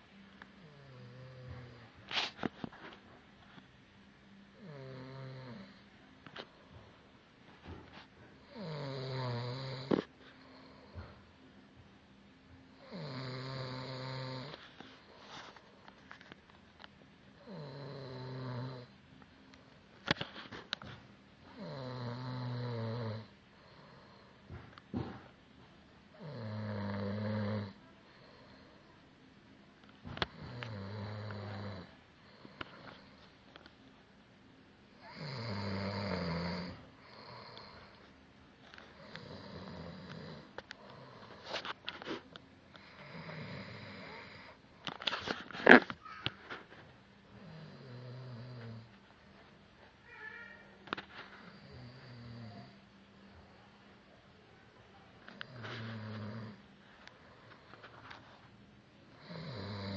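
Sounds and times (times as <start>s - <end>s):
man snoring: 4.6s - 5.8s, 8.4s - 10.0s, 12.8s - 14.6s, 17.4s - 18.9s, 21.5s - 24.1s, 26.2s - 27.8s, 30.3s - 31.9s, 35.0s - 37.8s, 39.0s - 41.4s, 42.8s - 44.6s, 47.4s - 48.9s, 51.6s - 52.7s, 55.4s - 56.6s, 59.2s - 59.9s.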